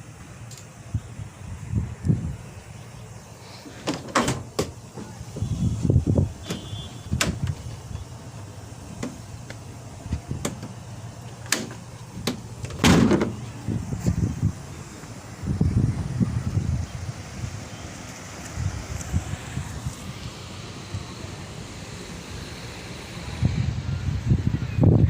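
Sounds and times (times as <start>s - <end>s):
loud thump: 12.7s - 13.4s.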